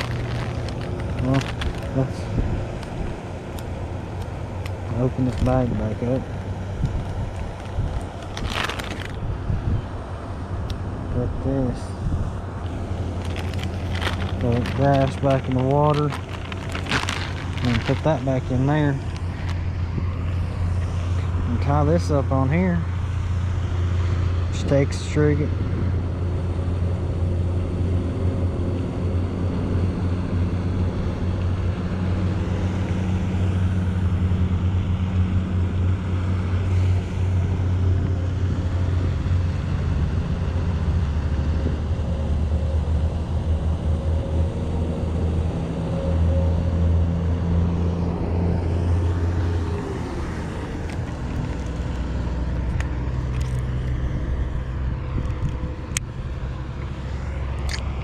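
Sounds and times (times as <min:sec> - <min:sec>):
wind buffeting microphone: 0:00.0 - 0:21.5, 0:50.3 - 0:56.4.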